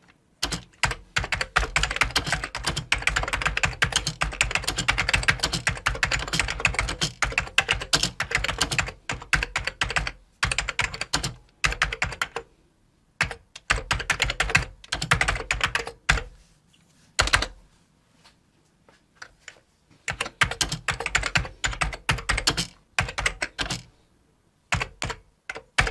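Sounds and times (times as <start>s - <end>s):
computer keyboard typing: 0.4s - 12.5s, 13.2s - 16.3s, 17.2s - 17.6s, 20.1s - 23.9s, 24.7s - 25.9s.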